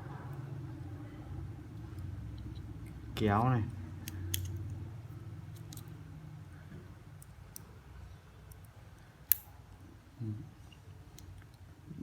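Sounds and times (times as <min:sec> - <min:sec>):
pocket knife tools clicking: 0:04.0 - 0:04.6.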